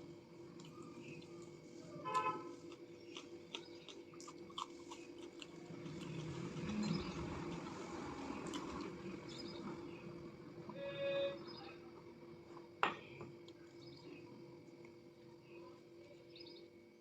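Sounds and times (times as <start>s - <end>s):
soft chewing: 0.0s - 9.6s, 12.5s - 16.2s
steady low hum: 0.0s - 17.0s
vehicle horn toot: 2.0s - 2.5s, 10.7s - 11.6s
mouth and lip clicks: 2.6s - 6.2s.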